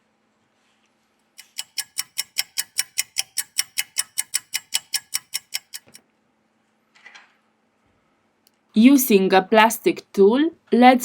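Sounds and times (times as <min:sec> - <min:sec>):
clock ticking: 0:01.4 - 0:06.0.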